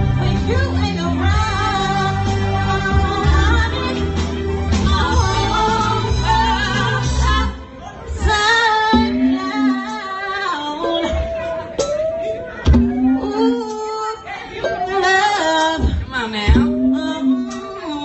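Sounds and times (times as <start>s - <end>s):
live band playing: 0.0s - 18.0s.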